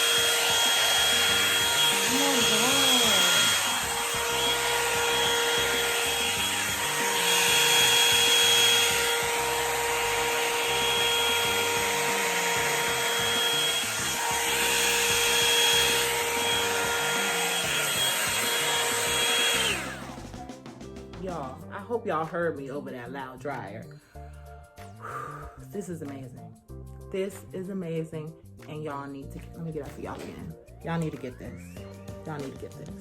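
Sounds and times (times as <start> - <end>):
hair dryer running: 0.0 - 20.6.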